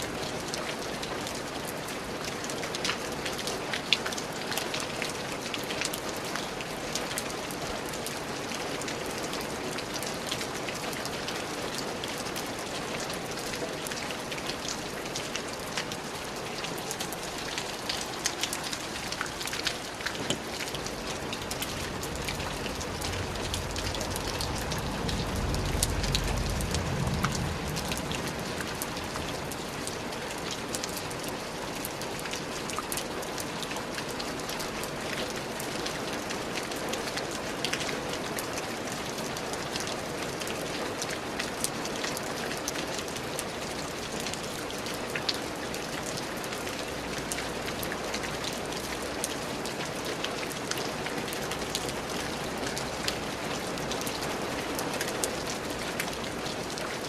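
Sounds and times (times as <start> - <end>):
rain falling: 0.0 - 57.0
raindrop hits: 19.6 - 30.7.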